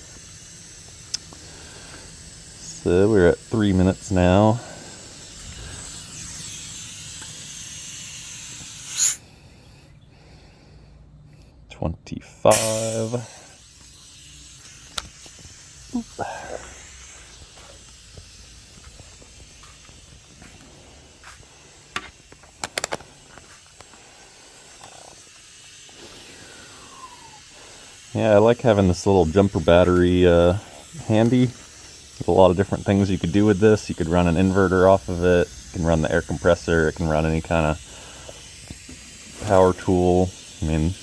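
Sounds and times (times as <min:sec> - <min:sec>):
air hissing out of tires: 0:00.0 - 0:10.8, 0:12.5 - 0:41.0
sharp clicks: 0:22.0 - 0:23.1.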